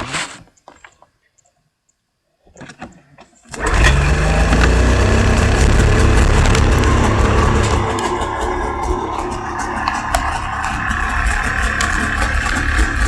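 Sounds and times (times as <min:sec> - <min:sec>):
snowmobile engine running: 0:03.6 - 0:13.0.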